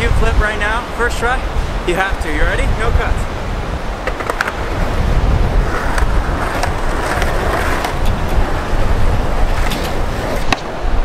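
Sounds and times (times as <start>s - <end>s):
skateboard wheels rolling on pavement: 0.0s - 11.0s
wind buffeting microphone: 0.0s - 11.0s
skateboard clacks: 4.0s - 4.9s, 5.6s - 10.8s.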